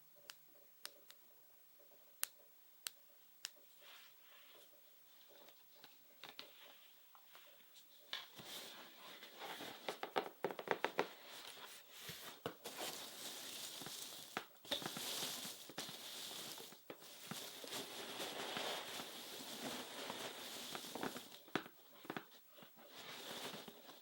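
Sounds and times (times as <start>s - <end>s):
soft rustling or brushing: 3.7s - 5.7s, 11.1s - 21.5s, 22.8s - 24.0s.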